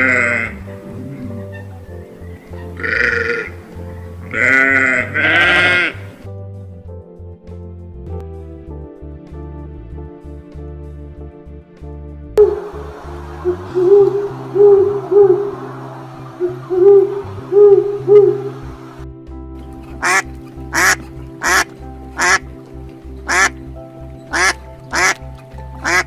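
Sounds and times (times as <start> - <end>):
background music: 0.0 - 26.0
duck quacking: 2.6 - 3.6, 4.3 - 6.1, 19.9 - 22.5, 23.3 - 23.6, 24.3 - 25.2
low rounded calls: 12.4 - 19.0, 23.2 - 26.0.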